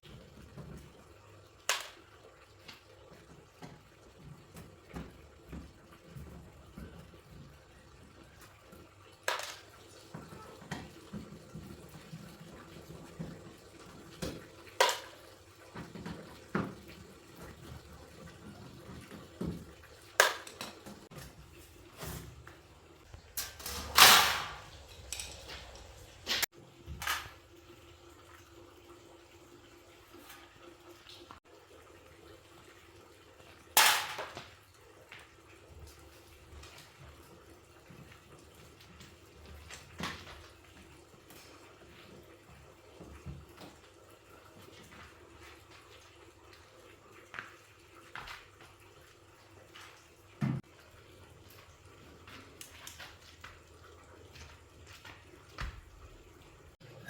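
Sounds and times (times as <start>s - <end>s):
hands and tools clattering on parts: 19.0s - 21.2s, 23.4s - 27.3s.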